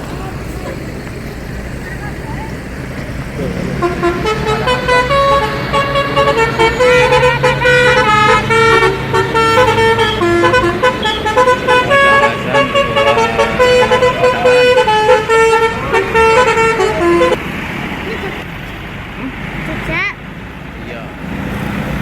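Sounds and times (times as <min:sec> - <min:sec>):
low engine hum: 0:00.0 - 0:22.0
multi-tone bus horn melody: 0:03.1 - 0:17.5.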